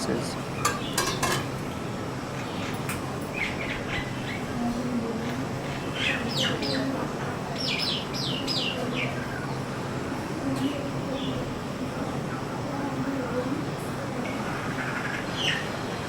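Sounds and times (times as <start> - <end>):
myna calling: 5.7 - 10.3.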